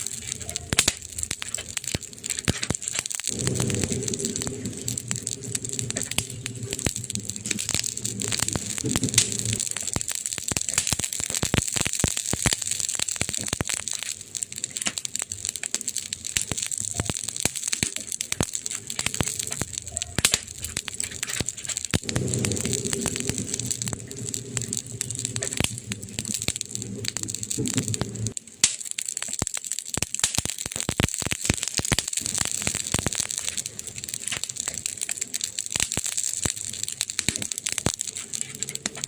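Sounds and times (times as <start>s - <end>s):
wood fire crackling: 0.0s - 39.0s
low rumble: 3.2s - 9.9s, 18.9s - 28.4s.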